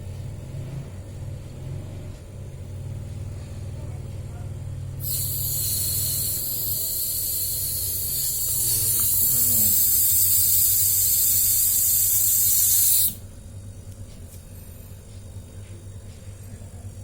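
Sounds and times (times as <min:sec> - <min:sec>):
steady low hum: 0:00.0 - 0:17.0
refrigerant gas hissing: 0:05.0 - 0:13.3.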